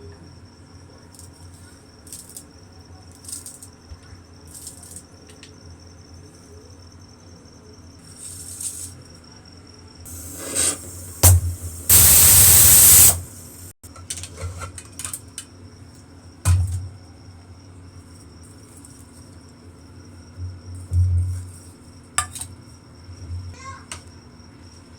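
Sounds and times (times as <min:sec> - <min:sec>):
loud even hiss: 0:10.1 - 0:13.7.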